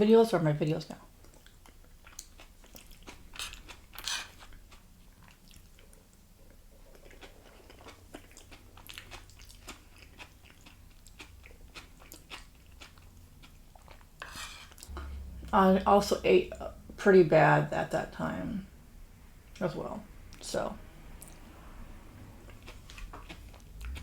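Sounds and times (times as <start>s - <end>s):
person chewing crunchy food: 1.2s - 15.4s, 22.4s - 24.0s.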